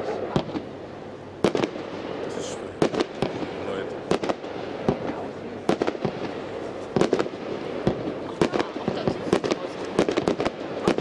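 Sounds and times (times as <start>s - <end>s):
fireworks bangs: 0.0s - 11.0s
steady background hiss: 0.0s - 11.0s.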